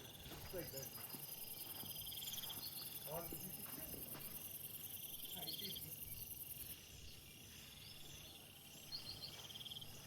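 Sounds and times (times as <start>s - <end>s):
insects pulsing trills: 0.0s - 10.0s.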